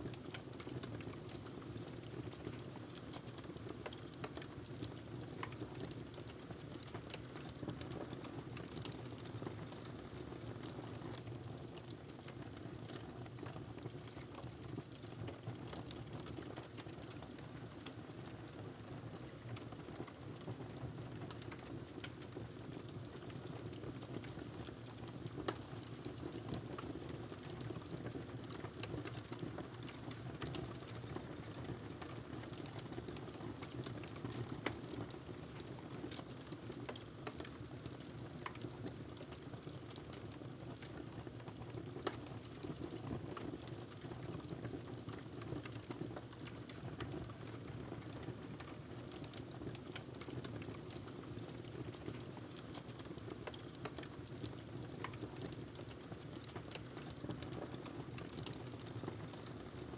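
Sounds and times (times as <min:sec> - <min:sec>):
wood fire crackling: 0:27.6 - 0:35.5, 0:36.1 - 0:42.6, 0:51.6 - 0:59.9.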